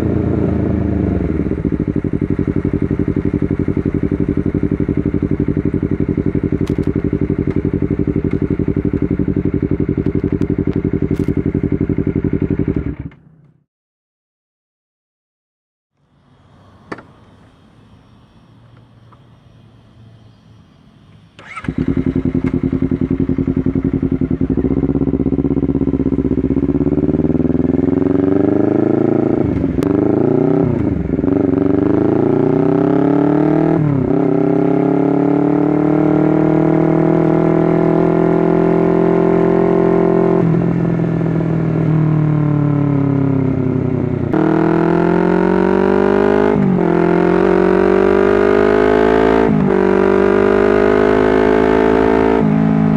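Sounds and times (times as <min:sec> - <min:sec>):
motorcycle engine revving: 0:00.0 - 0:13.5, 0:20.2 - 0:52.9.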